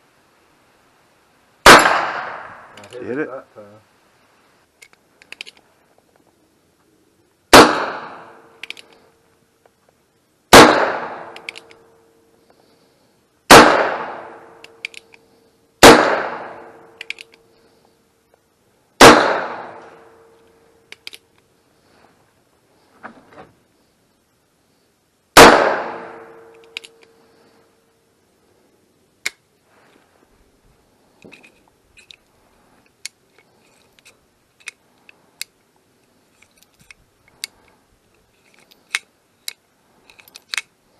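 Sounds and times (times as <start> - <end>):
gunshots: 1.6 - 2.8, 7.5 - 8.3, 10.5 - 11.4, 13.5 - 14.4, 15.8 - 16.7, 19.0 - 19.8, 25.4 - 26.4.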